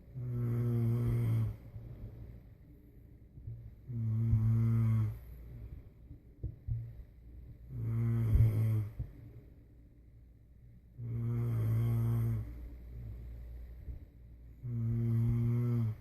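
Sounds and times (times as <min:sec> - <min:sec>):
person snoring: 0:00.1 - 0:01.6, 0:03.9 - 0:05.3, 0:07.7 - 0:09.0, 0:11.0 - 0:12.6, 0:14.6 - 0:16.0.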